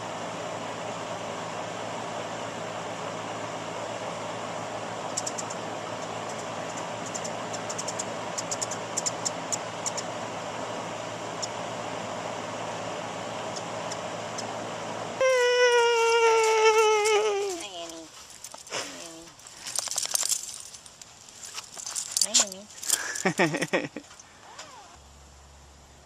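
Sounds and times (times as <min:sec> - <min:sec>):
steady hiss with low hum: 0:00.0 - 0:26.0
light high-pitched ticks: 0:05.1 - 0:10.1, 0:13.5 - 0:14.5
dog whining: 0:15.2 - 0:18.0.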